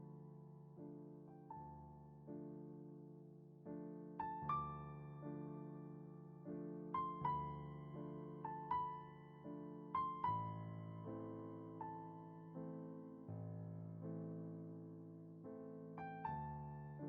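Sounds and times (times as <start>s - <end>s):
soft slow piano music: 0.0s - 17.0s.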